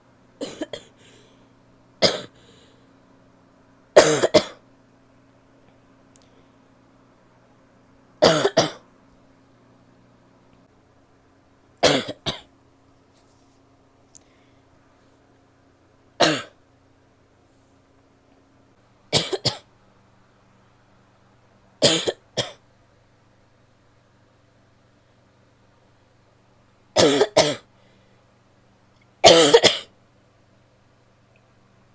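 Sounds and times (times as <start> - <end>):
woman coughing: 0.4 - 1.0, 2.0 - 2.4, 4.0 - 4.6, 8.2 - 8.8, 11.8 - 12.5, 16.2 - 16.6, 19.1 - 19.7, 21.8 - 22.6, 27.0 - 27.7, 29.2 - 29.9.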